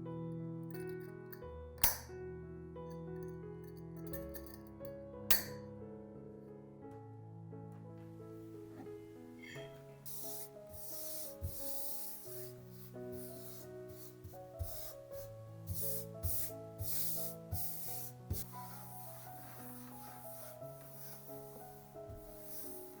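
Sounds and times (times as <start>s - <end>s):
soft background music: 0.0s - 23.0s
rough rubbing strokes: 9.5s - 23.0s.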